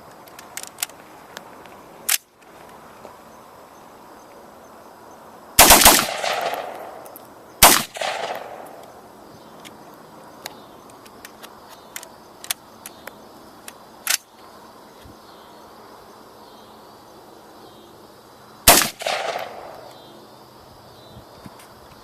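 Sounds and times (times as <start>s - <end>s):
sharp crack: 2.0s - 2.5s, 5.6s - 9.0s, 10.4s - 14.3s, 18.7s - 20.0s
rifle shot with echo: 5.6s - 8.9s, 18.7s - 20.0s.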